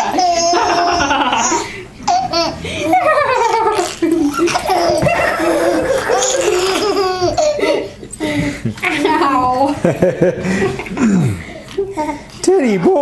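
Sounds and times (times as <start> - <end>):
baby laughing: 0.0 - 9.4.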